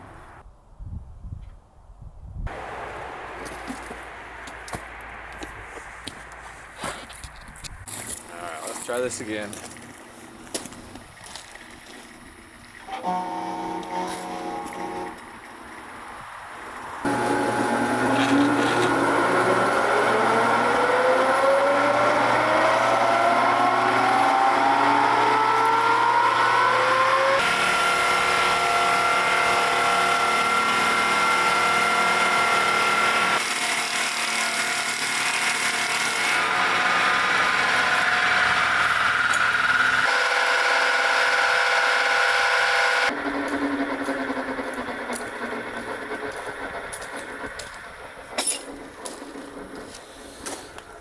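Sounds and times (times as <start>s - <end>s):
circular sawmill whining: 11.9s - 50.9s.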